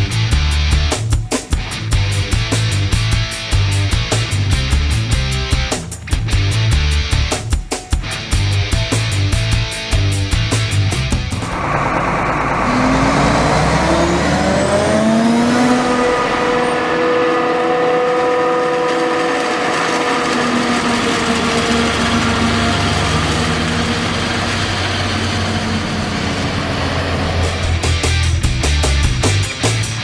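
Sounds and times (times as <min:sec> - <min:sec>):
farm machine engine revving: 0:08.4 - 0:30.0.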